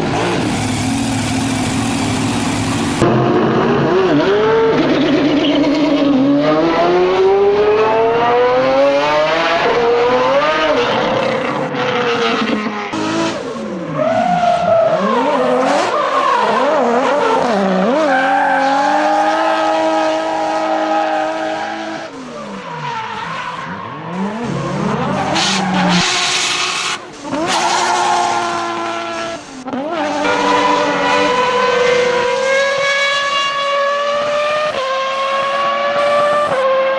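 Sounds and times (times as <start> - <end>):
car engines revving: 0.0 - 36.9
tyre squeal and skidding: 4.6 - 6.2, 12.1 - 33.8.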